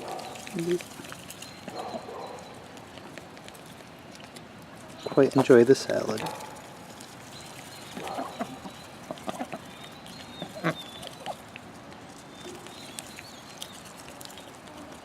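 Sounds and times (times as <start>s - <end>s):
birds pecking: 0.0s - 15.0s
chickens clucking: 0.1s - 11.6s.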